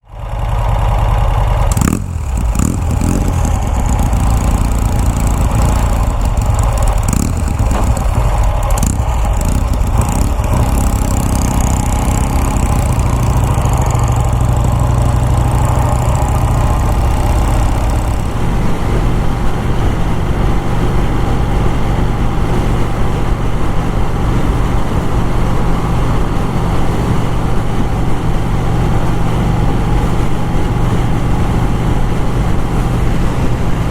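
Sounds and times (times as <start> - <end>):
motorcycle engine running: 0.0 - 33.9
sharp clicks and knocks: 1.7 - 18.4.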